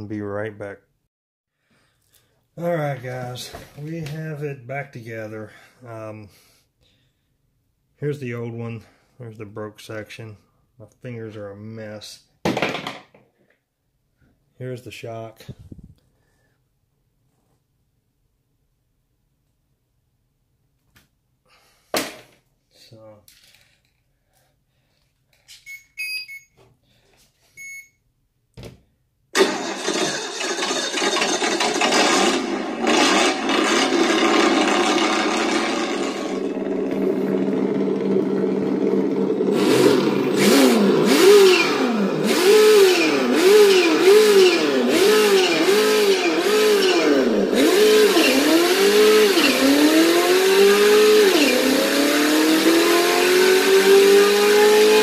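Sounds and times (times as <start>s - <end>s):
rc car motor whining: 29.4s - 55.0s.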